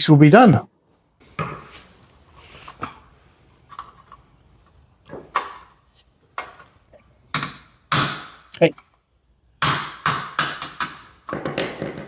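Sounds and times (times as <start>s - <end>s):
metal parts knocking and clinking: 1.2s - 9.0s, 9.6s - 12.0s.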